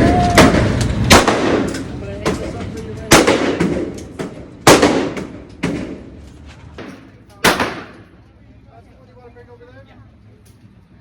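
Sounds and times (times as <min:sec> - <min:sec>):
gunshots with echo: 0:00.4 - 0:01.7, 0:03.1 - 0:04.0, 0:04.6 - 0:06.1.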